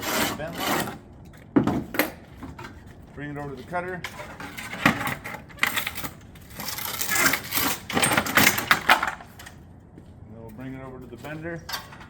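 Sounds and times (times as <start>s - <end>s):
panel cutter cutting steel roof panel: 0.0s - 1.0s, 6.5s - 9.1s.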